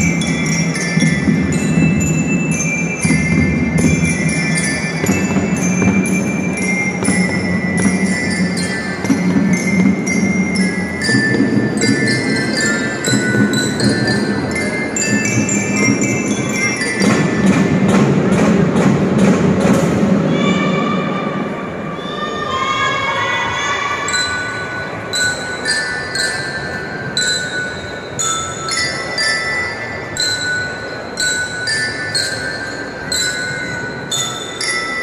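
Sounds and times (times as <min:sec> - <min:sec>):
glockenspiel melody: 0:00.0 - 0:20.3, 0:24.0 - 0:35.0.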